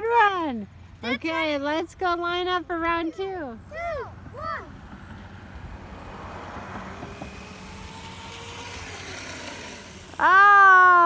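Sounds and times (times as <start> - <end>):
electric motors whining: 5.2 - 10.6.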